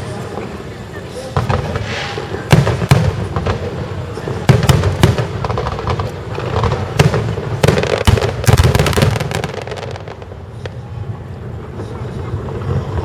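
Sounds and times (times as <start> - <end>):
crackling firework reports: 0.0 - 13.0
booming firework bursts: 1.3 - 11.2.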